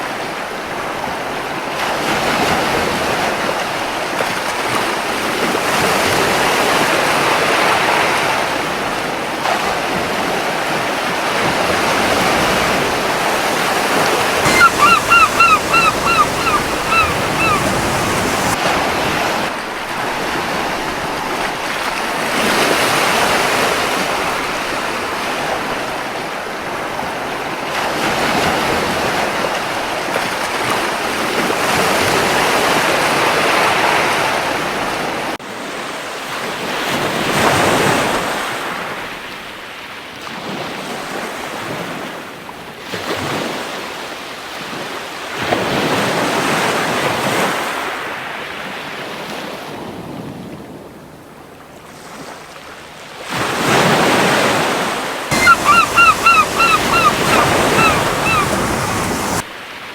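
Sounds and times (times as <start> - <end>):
ocean waves washing onto beach: 0.0 - 35.3, 51.8 - 59.9
gull calling: 14.4 - 18.6, 55.3 - 59.4.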